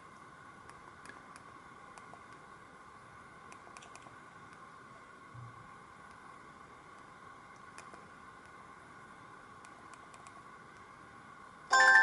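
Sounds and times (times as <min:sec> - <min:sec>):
low hiss: 0:00.0 - 0:12.0
faint clicks: 0:03.5 - 0:04.7, 0:06.9 - 0:08.6, 0:09.6 - 0:10.9
polyphonic phone ringtone: 0:11.7 - 0:12.0.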